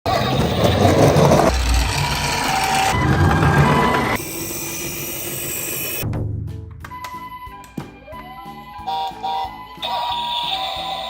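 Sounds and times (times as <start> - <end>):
two-tone ambulance siren: 1.8 - 4.3.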